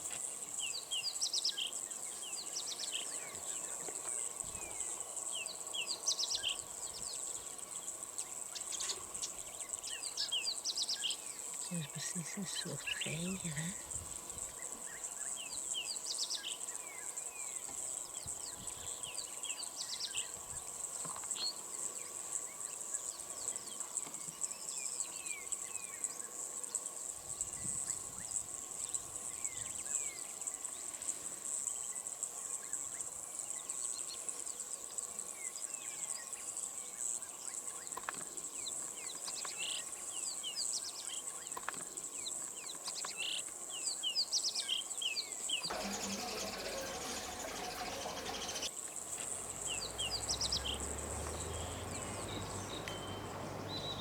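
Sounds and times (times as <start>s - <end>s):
high-pitched insect drone: 45.7s - 49.8s.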